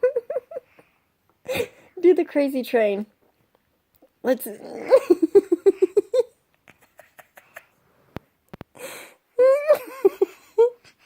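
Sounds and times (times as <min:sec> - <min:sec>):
breath: 0:08.0 - 0:09.2.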